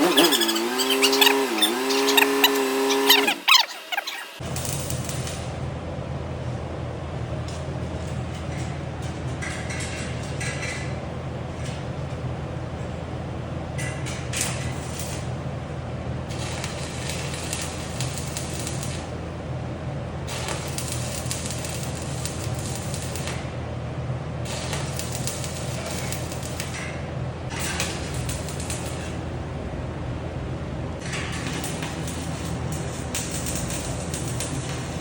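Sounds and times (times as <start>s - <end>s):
arc welding crackling: 0.0s - 5.6s, 14.3s - 15.3s, 16.2s - 19.2s, 20.2s - 23.5s, 24.4s - 26.8s, 27.5s - 29.2s, 31.0s - 35.0s.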